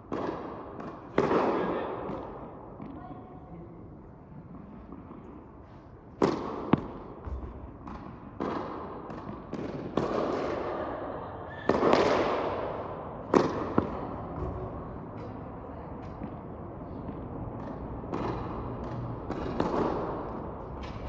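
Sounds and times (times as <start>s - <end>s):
racket hitting tennis ball: 0.0s - 2.9s, 6.2s - 10.8s, 11.7s - 14.7s, 17.6s - 21.0s
ball smacking in echoing court: 0.0s - 3.0s, 6.1s - 16.4s, 17.0s - 21.0s.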